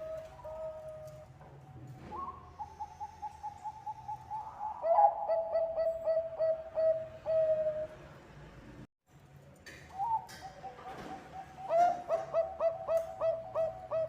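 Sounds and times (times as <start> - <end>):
dove cooing: 0.0 - 1.3, 2.1 - 8.0, 10.0 - 14.0.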